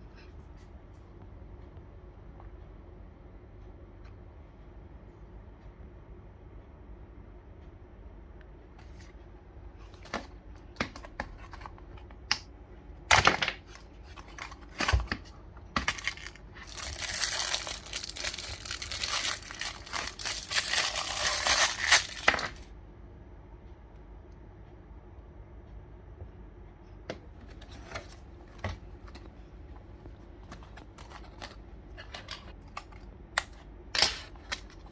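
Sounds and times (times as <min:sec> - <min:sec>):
packaging crinkling and tearing: 0:15.8 - 0:22.7.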